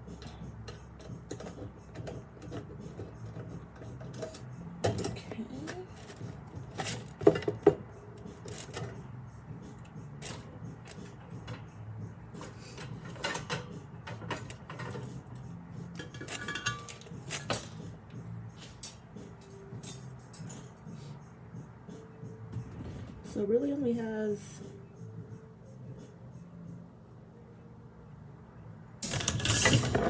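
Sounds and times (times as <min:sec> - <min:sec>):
metal rack parts clinking: 0:00.1 - 0:07.8, 0:08.4 - 0:09.1, 0:10.2 - 0:11.8, 0:12.4 - 0:17.9, 0:18.6 - 0:20.9, 0:29.0 - 0:30.0
metallic ring: 0:15.9 - 0:17.9
sharp metal clanks: 0:16.0 - 0:17.9.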